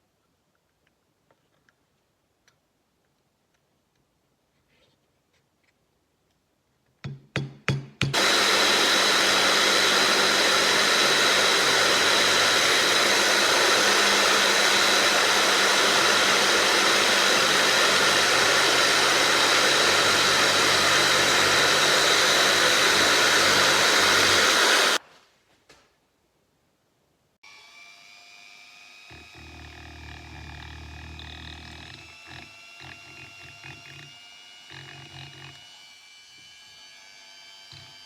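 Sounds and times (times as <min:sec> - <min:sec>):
electric power tool whining: 0:08.1 - 0:25.0, 0:27.4 - 0:38.0.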